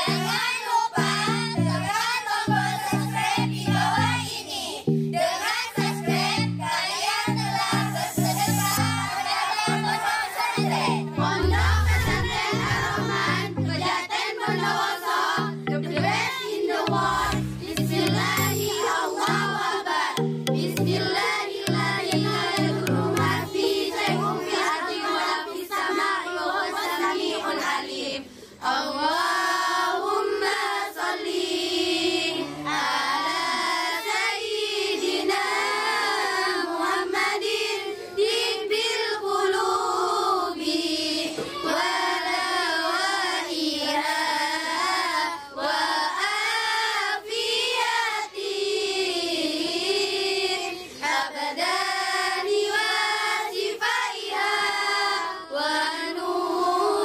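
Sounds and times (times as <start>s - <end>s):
high-pitched voice singing: 0.0s - 24.8s
light musical backing: 1.0s - 24.7s.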